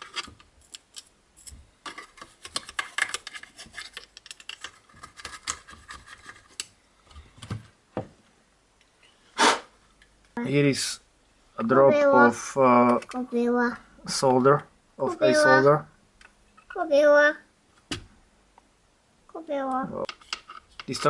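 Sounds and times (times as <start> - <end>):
short loud hiss: 9.4 - 9.7.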